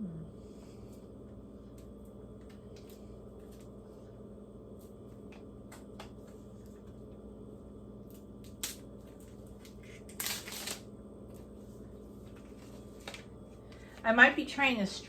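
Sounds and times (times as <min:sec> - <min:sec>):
steady low hum: 0:00.0 - 0:15.0
plastic film crinkling: 0:08.5 - 0:10.8.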